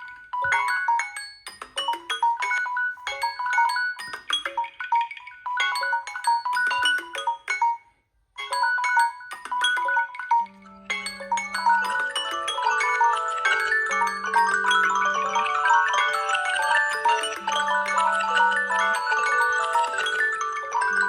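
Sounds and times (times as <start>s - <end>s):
phone alarm melody: 8.4s - 21.0s.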